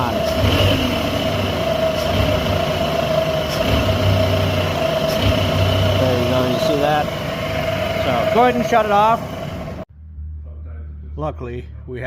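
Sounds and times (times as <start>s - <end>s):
steady high whine: 0.0s - 9.9s
misfiring car engine: 0.0s - 10.6s.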